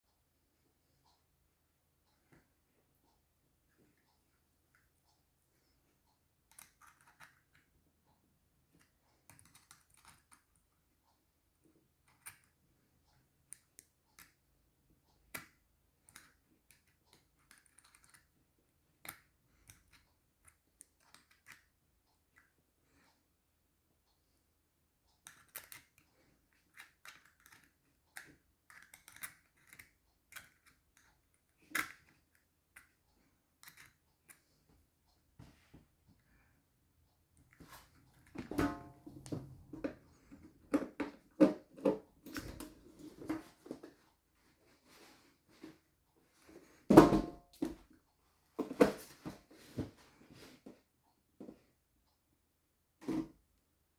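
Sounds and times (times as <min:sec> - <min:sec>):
clicks and taps on plug pins: 0:26.6 - 0:32.9.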